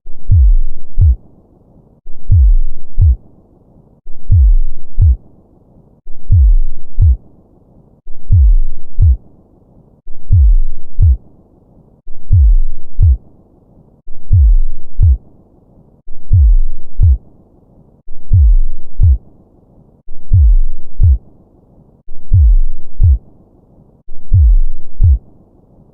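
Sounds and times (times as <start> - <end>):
heartbeat thumps: 0.1 - 1.2, 2.1 - 3.2, 4.1 - 5.2, 6.1 - 7.2, 8.1 - 9.2, 10.1 - 11.2, 12.1 - 13.2, 14.1 - 15.2, 16.1 - 17.2, 18.1 - 19.2, 20.1 - 21.3, 22.1 - 23.3, 24.1 - 25.3
faint low hiss: 0.1 - 25.9.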